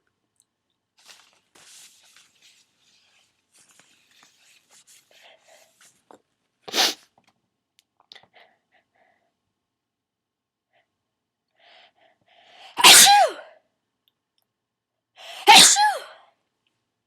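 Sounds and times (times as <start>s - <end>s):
person sneezing: 6.7s - 7.0s, 12.8s - 13.5s, 15.3s - 16.2s.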